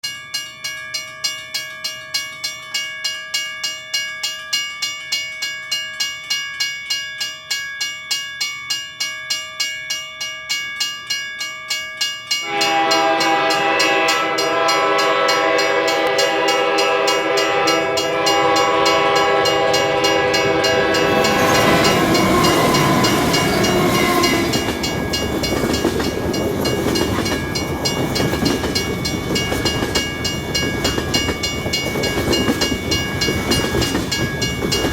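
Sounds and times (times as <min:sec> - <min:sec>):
level crossing bell ringing: 0:00.0 - 0:34.9
locomotive horn: 0:12.4 - 0:25.0
freight train rumbling past: 0:12.4 - 0:34.9.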